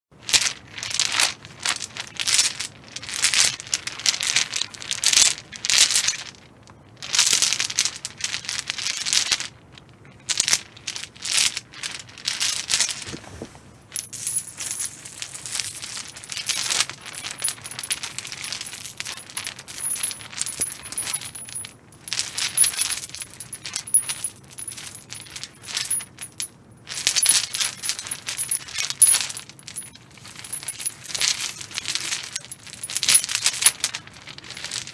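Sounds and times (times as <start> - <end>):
metal chain clinking: 0.3 - 13.2, 13.9 - 34.9.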